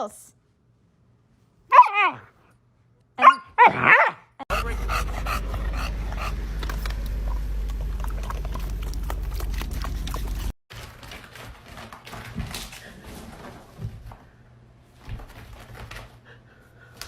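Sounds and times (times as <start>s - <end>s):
dog vocal calls: 3.2s - 6.5s
steady low hum: 4.5s - 10.6s.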